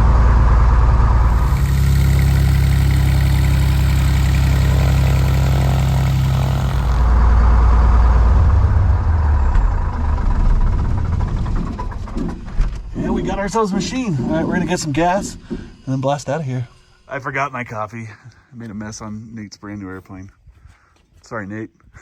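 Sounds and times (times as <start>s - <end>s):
aircraft engine idling: 1.0s - 7.3s.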